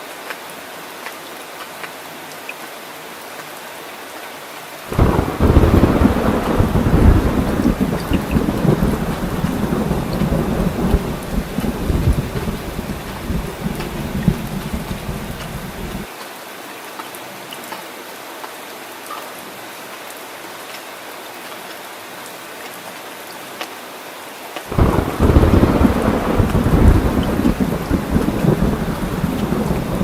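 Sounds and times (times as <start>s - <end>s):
heavy rain falling: 0.0s - 16.5s, 24.4s - 30.0s
thunder rumbling: 4.9s - 16.1s, 24.7s - 30.0s.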